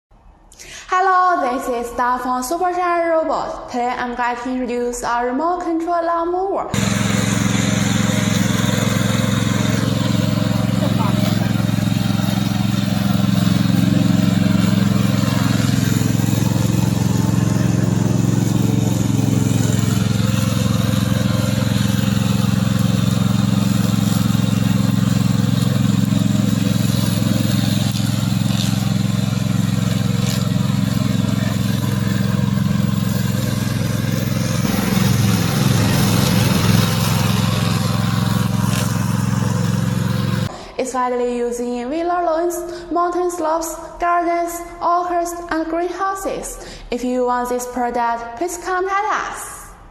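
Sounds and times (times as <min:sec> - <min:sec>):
lawn mower engine running: 0:06.7 - 0:40.5.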